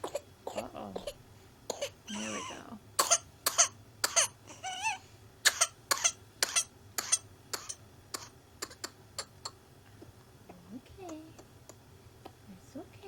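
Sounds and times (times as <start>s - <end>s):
short sharp coughs: 5.5s - 9.3s.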